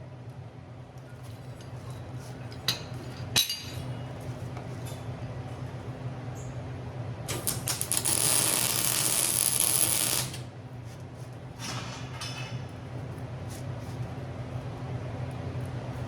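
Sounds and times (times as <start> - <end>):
steady electrical hum: 0.0 - 16.0
arc welding crackling and hissing: 7.2 - 11.5.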